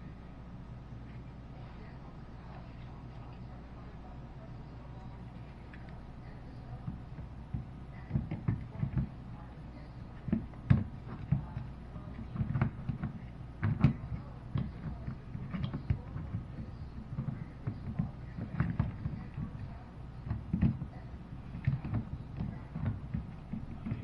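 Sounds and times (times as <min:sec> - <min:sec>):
low steady hum: 0:00.0 - 0:24.0
knocks and taps: 0:06.8 - 0:09.1.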